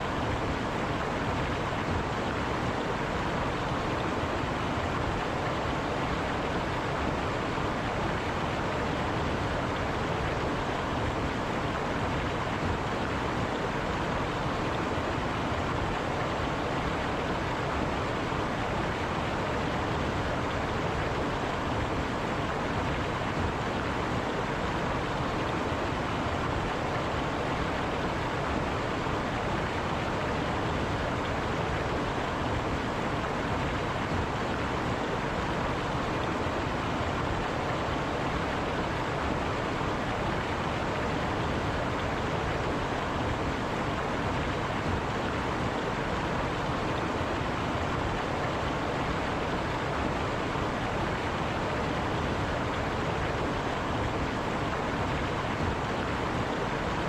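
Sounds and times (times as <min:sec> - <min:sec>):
water rushing over rocks: 0:00.0 - 0:57.0.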